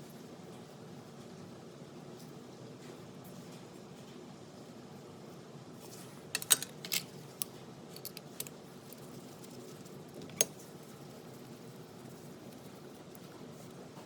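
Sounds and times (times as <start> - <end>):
metal parts and tools clinking: 6.4 - 8.5, 10.2 - 10.6.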